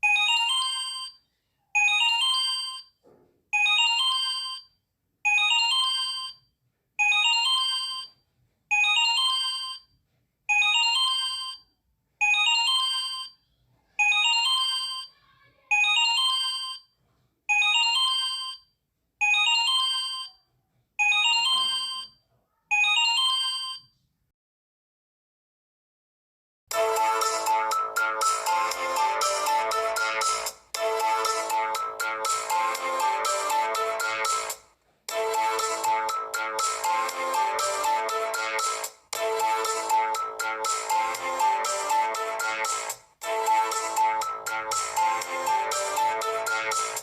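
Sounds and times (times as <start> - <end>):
smartphone ringtone chiming: 0.0 - 1.2, 1.8 - 2.9, 3.6 - 4.6, 5.3 - 6.4, 7.0 - 9.8, 10.5 - 11.6, 12.2 - 13.4, 14.0 - 16.8, 21.0 - 23.8, 26.7 - 47.0.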